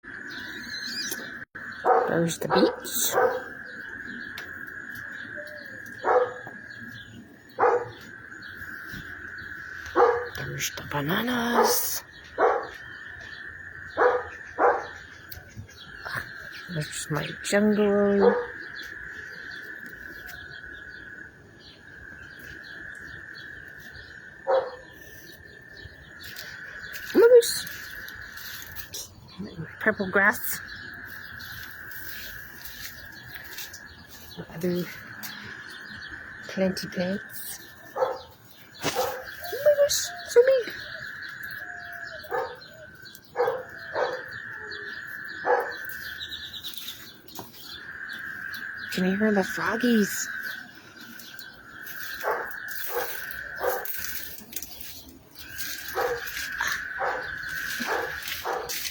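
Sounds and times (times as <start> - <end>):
frogs trilling: 0.0 - 58.9
frog chirps: 0.1 - 58.9
rapid pulsing frog call: 55.4 - 58.9
single frog calls: 55.4 - 58.9.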